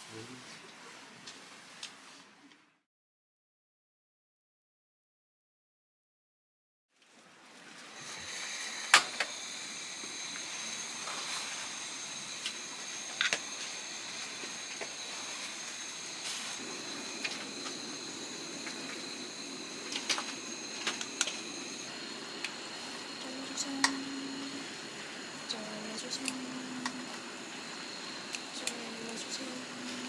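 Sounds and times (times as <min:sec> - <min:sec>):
food sizzling in a pan: 0:07.9 - 0:30.0.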